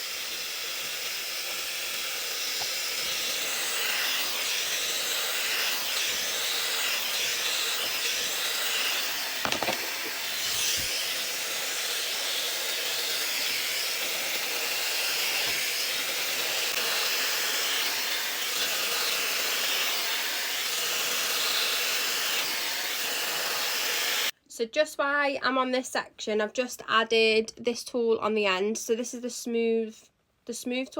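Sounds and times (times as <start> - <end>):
hair dryer blowing air: 0.0 - 24.3.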